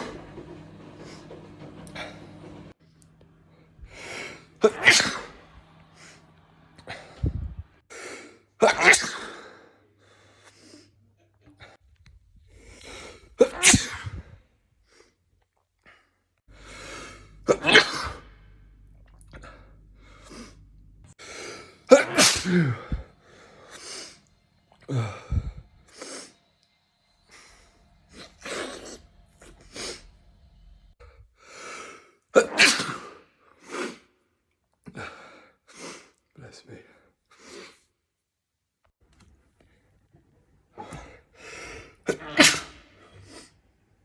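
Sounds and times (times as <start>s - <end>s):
person sneezing: 4.0s - 6.2s, 8.6s - 9.7s, 13.0s - 14.4s, 17.0s - 18.3s, 21.4s - 24.2s, 32.4s - 34.0s, 40.8s - 43.5s.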